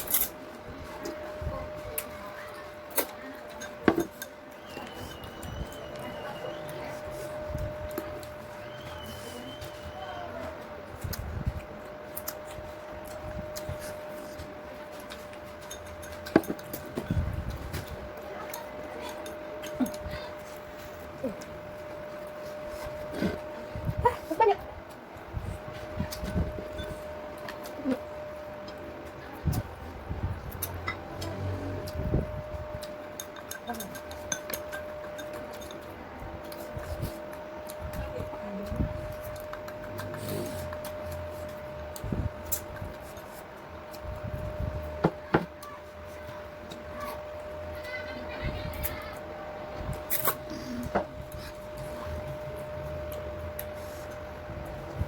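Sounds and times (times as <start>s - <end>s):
steady high hum: 0.0s - 55.0s
utensils clinking against bowls: 2.0s - 10.0s, 11.9s - 23.6s, 32.6s - 44.0s.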